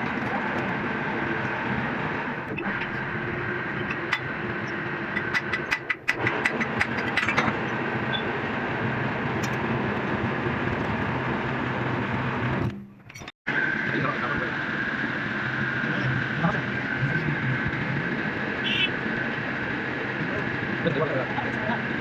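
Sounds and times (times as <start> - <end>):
metalworking machine humming: 0.0 - 22.0.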